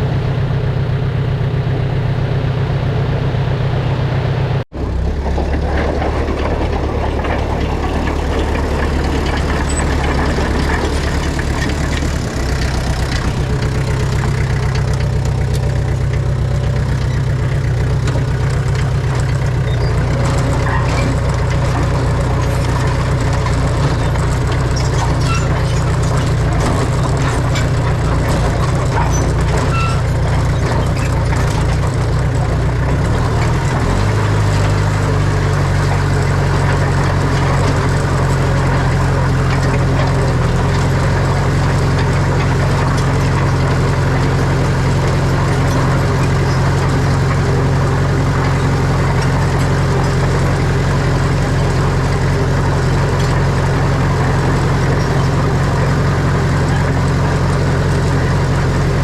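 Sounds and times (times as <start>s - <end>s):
heavy diesel engine running: 0.0s - 59.0s
faint clicks and squeaks: 5.4s - 15.7s, 19.2s - 32.0s.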